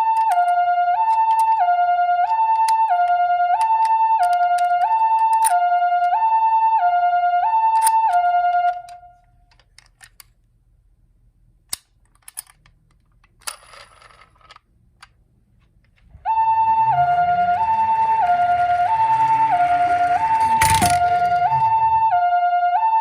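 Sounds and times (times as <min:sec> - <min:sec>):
toy two-tone siren: 0:00.0 - 0:09.2, 0:16.1 - 0:23.0
low rising hum: 0:16.0 - 0:22.6.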